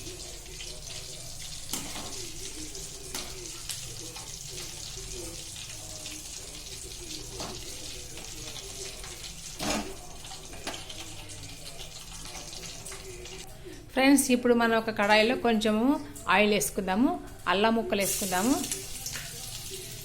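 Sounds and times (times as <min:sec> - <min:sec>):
chicken frying in hot oil: 0:00.0 - 0:13.4, 0:18.0 - 0:20.0.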